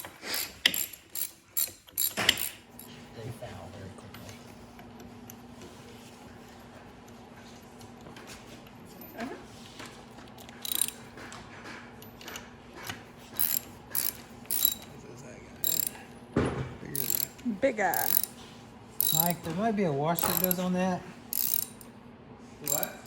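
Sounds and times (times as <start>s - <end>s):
socket ratchet clicking: 0.0s - 2.6s, 10.4s - 11.0s, 13.4s - 14.9s, 15.6s - 16.0s, 17.0s - 17.4s, 18.0s - 18.3s, 19.0s - 19.5s, 20.2s - 20.6s, 21.3s - 21.9s, 22.7s - 23.0s.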